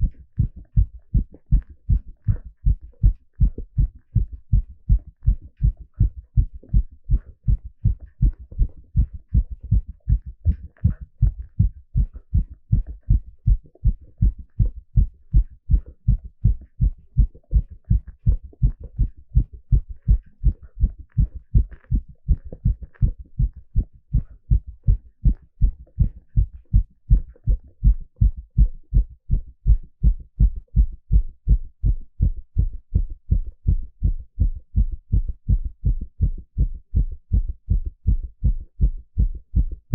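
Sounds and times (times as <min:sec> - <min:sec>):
heartbeat through stethoscope: 0:00.0 - 0:39.9.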